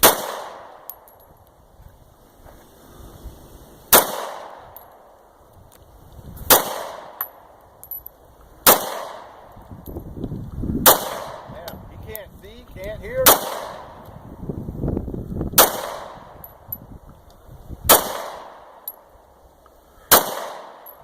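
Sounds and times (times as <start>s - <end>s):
gunshots with ringing echo: 0.0s - 1.2s, 3.9s - 5.0s, 6.5s - 8.0s, 8.6s - 9.4s, 10.8s - 11.5s, 13.2s - 13.9s, 15.6s - 16.6s, 17.9s - 19.1s, 20.1s - 21.0s
light clinks: 0.8s - 1.6s, 7.2s - 8.2s.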